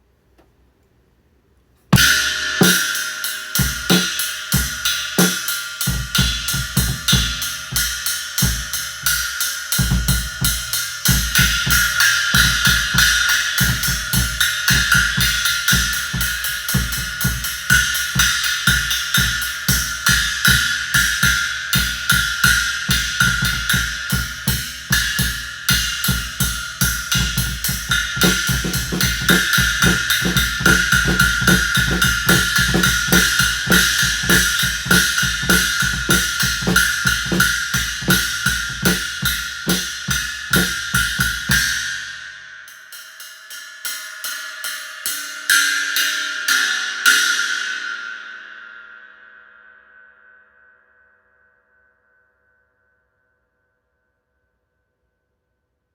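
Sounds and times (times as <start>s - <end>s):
drum kit playing: 2.0s - 8.8s, 23.2s - 41.8s
china cymbal wash: 2.0s - 51.4s.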